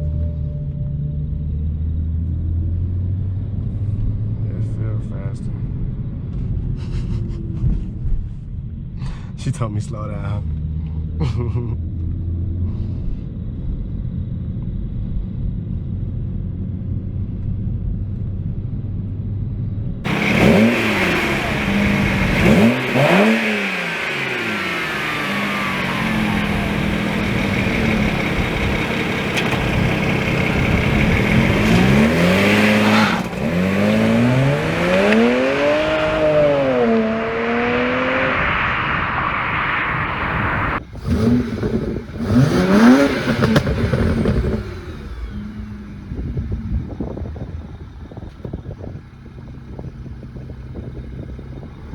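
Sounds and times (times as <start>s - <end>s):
car engine revving: 20.1s - 48.3s.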